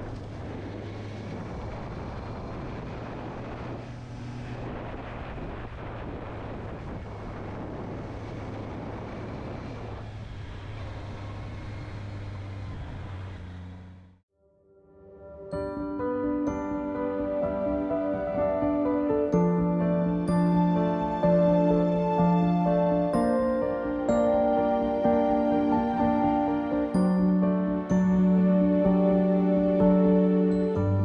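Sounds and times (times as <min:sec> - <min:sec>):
wind rushing over microphone: 0:00.0 - 0:12.0.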